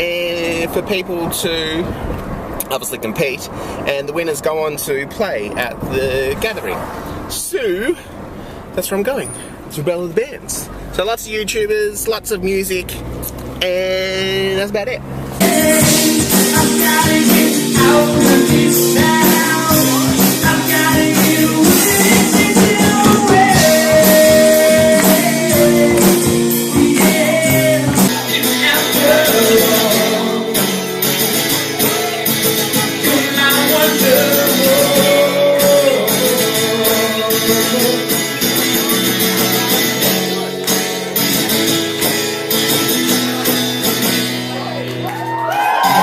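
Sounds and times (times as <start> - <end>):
person singing: 15.4 - 38.7
rock band playing live: 15.4 - 46.0.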